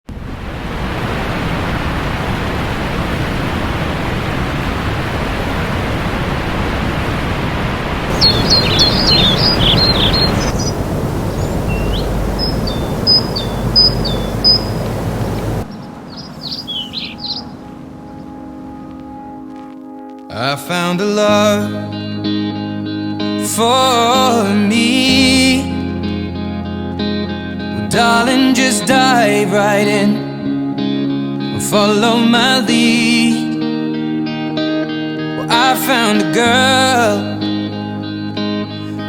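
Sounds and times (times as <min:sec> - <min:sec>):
waterfall rushing: 0:00.2 - 0:18.8
songbirds chirping: 0:08.0 - 0:19.3.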